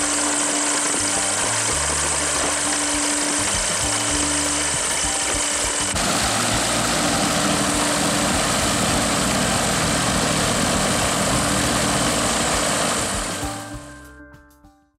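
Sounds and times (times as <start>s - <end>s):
aircraft engine and propeller drone: 0.0s - 13.5s.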